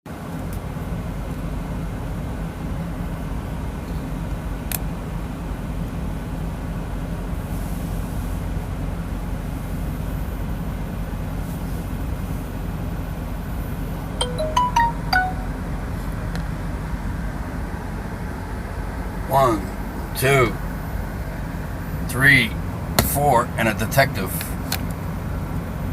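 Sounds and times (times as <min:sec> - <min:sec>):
electronic jingle: 0:14.2 - 0:15.6.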